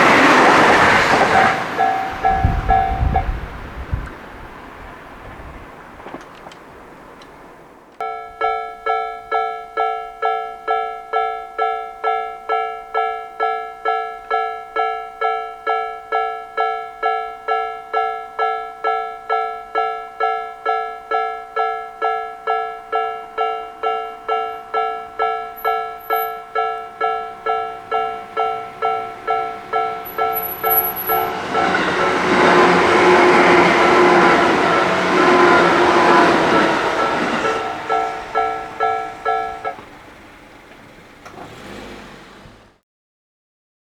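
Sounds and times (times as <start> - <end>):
electronic crossing bells ringing: 0.0 - 3.4, 8.0 - 40.2
train wheels rushing: 0.0 - 7.5, 23.8 - 42.7.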